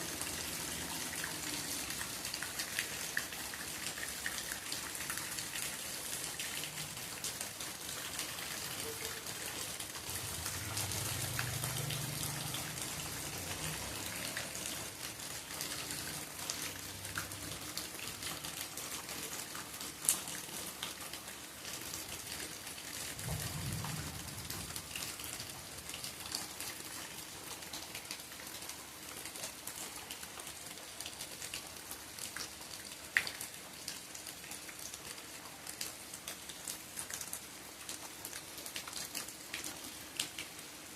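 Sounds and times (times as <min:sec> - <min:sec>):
steady rain falling: 0:00.0 - 0:40.9
faint low rumble: 0:23.2 - 0:25.6.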